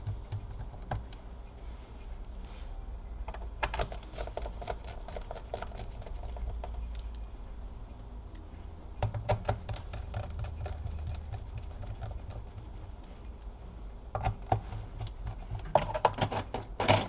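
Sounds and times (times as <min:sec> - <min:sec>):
low steady hum: 0:00.0 - 0:17.0
laptop and small tools clicking: 0:03.2 - 0:13.5.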